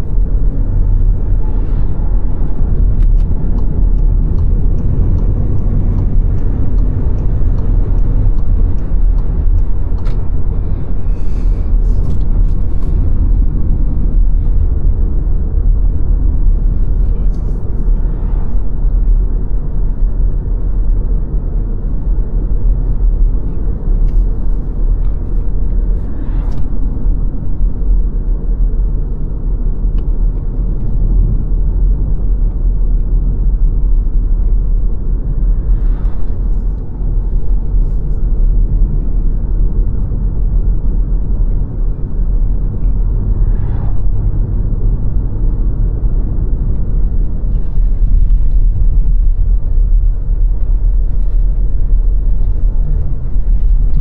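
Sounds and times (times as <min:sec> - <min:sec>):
car tyre and engine rumble: 0:00.0 - 0:54.0.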